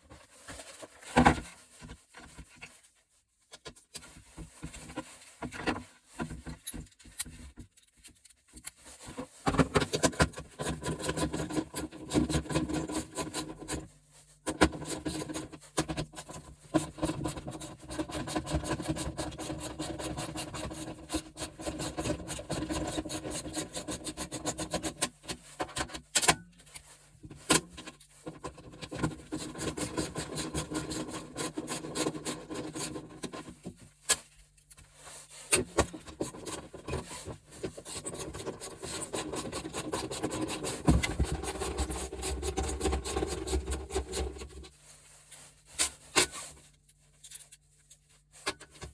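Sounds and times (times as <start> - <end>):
hand tools scraping metal: 9.8 - 13.9, 14.5 - 25.4, 28.3 - 33.6, 35.5 - 44.7.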